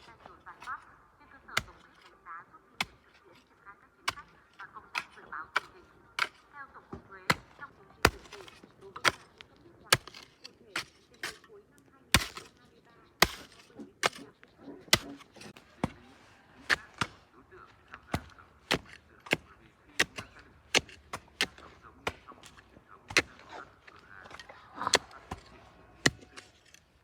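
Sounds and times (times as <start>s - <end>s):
hand tool striking hard material: 1.5s - 2.0s, 4.9s - 11.5s, 12.1s - 12.6s, 13.2s - 14.3s, 14.9s - 16.0s, 16.7s - 17.2s, 17.9s - 26.8s.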